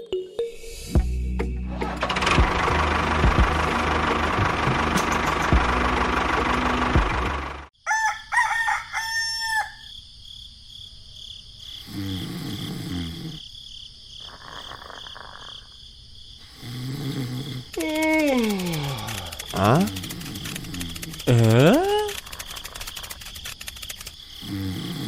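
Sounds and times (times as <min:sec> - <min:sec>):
engine running: 0:01.4 - 0:07.7, 0:17.7 - 0:24.1
rooster crowing: 0:07.8 - 0:10.0.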